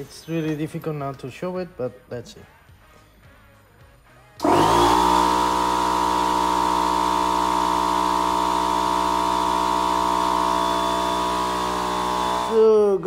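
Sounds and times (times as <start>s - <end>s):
motorcycle engine running: 4.4s - 12.7s.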